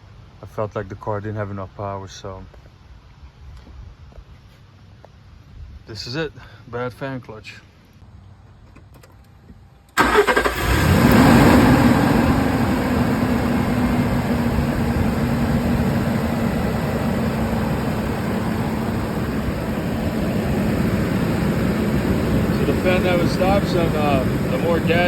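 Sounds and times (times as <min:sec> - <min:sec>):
engine starting: 0:10.0 - 0:12.1
loud roar of cooling fan: 0:10.5 - 0:25.0.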